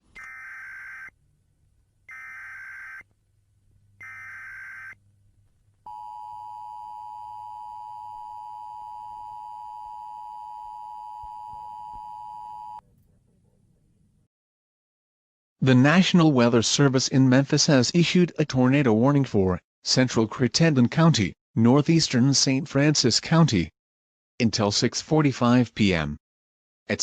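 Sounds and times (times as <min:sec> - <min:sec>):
steady warning alarm tone: 0:00.0 - 0:01.1, 0:02.1 - 0:03.0, 0:04.0 - 0:05.0, 0:05.9 - 0:12.8.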